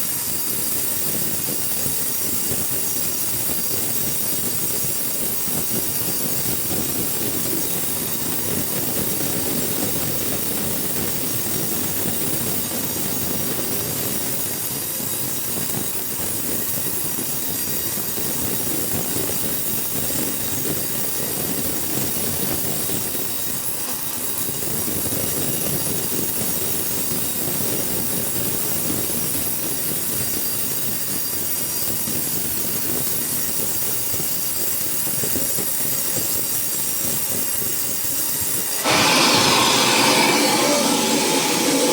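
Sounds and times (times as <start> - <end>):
sawmill saw cutting wood: 38.6 - 41.9
high whine: 38.8 - 41.9.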